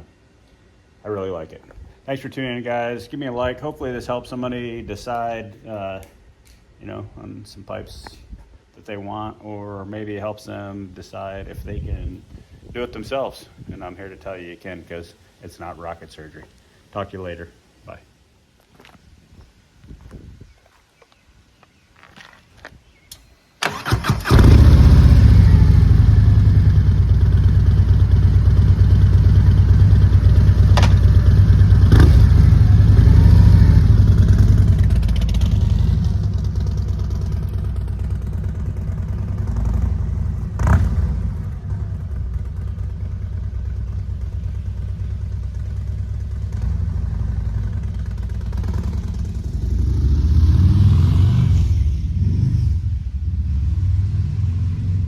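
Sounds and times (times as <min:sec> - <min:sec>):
motorcycle engine cranking: 0:23.1 - 0:25.8, 0:30.6 - 0:32.4
motorcycle engine revving: 0:23.7 - 0:55.0
motorcycle engine idling: 0:24.2 - 0:50.0.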